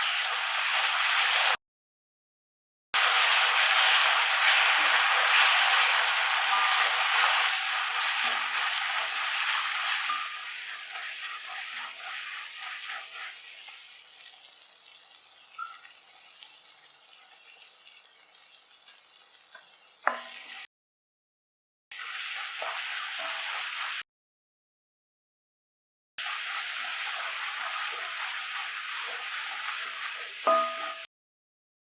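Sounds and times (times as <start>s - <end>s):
curry sizzling in a pan: 0.0s - 1.6s, 3.0s - 20.7s, 21.9s - 24.0s, 26.2s - 31.1s
utensil clinking against pan: 30.5s - 31.1s.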